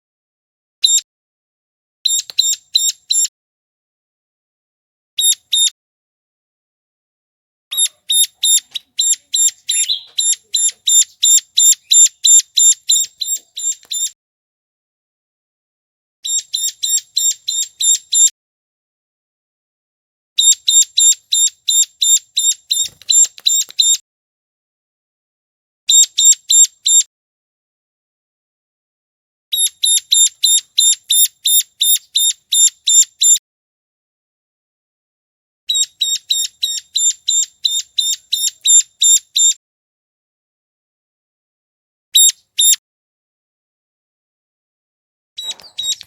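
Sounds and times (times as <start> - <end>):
bird calls high chipping notes: 2.1 - 3.3, 7.7 - 14.2, 16.2 - 18.3, 20.4 - 24.0, 29.6 - 33.4, 35.7 - 39.6, 45.4 - 46.0.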